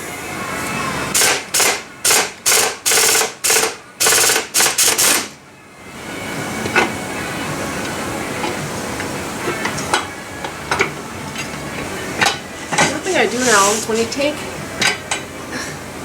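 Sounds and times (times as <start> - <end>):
pneumatic impact wrench hammering: 1.1 - 5.4.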